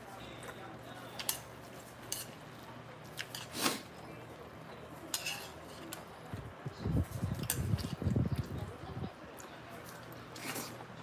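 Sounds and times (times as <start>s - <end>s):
cutlery clinking on dishes: 1.1s - 1.5s, 2.1s - 2.4s, 3.2s - 3.8s, 5.1s - 6.0s
cutlery scraping dish: 2.1s - 2.4s, 3.2s - 3.8s, 5.1s - 5.9s.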